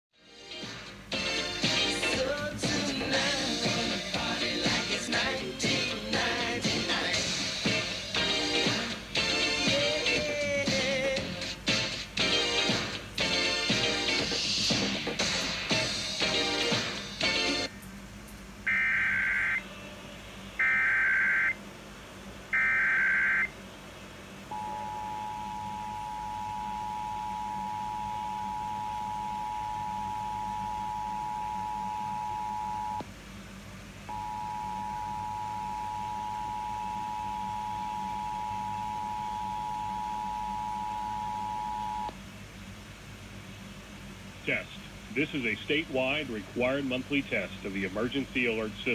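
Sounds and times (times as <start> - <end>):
screeching digital data bursts: 20.6 - 21.6, 22.6 - 23.5
two-tone attention signal: 20.6 - 21.6, 22.6 - 23.5, 24.5 - 33.0, 34.1 - 42.1.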